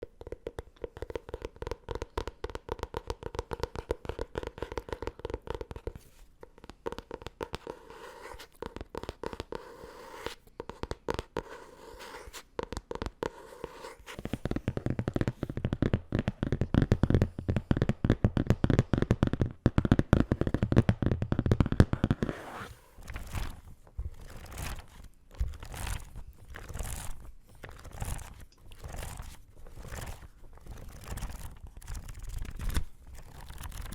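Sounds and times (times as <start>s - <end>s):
fast tapping on book: 0.0s - 33.9s
paper rustling: 21.7s - 33.9s.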